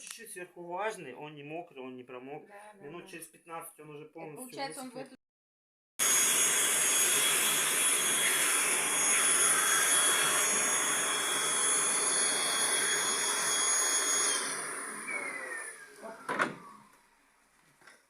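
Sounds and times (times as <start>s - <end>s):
vacuum motor winding down: 6.0s - 17.3s
vacuum cleaner whining: 6.0s - 17.5s.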